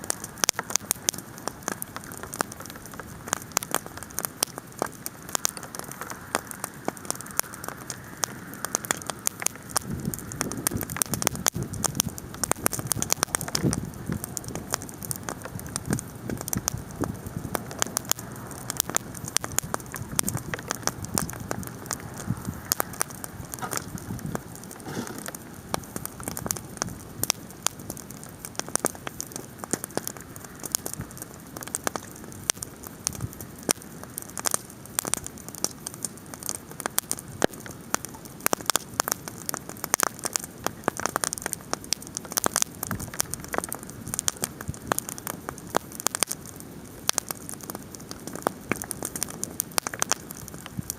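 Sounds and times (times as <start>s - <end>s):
bonfire crackling and popping: 0.0s - 50.9s
low rush of burning: 0.1s - 33.6s.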